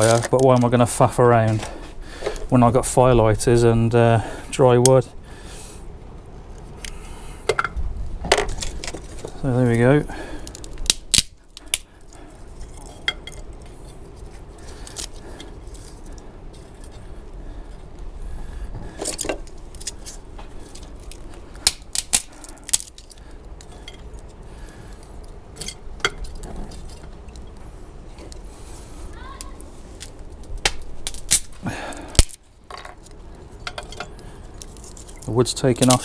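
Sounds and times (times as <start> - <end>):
kindling crackling: 0.0 - 36.0
wind rumble on microphone: 7.7 - 8.9.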